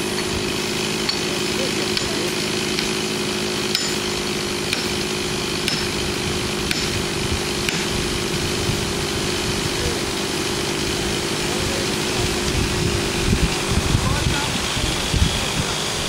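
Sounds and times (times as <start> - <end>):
chainsaw engine idling: 0.0 - 16.0.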